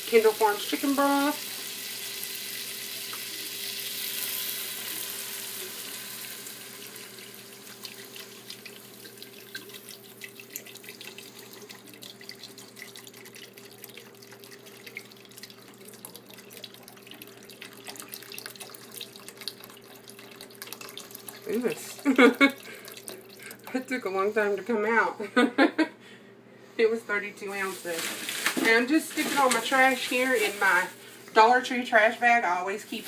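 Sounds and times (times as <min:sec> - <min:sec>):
liquid pouring into a pan: 0:00.1 - 0:24.0
liquid crackling and bubbling: 0:07.2 - 0:24.0.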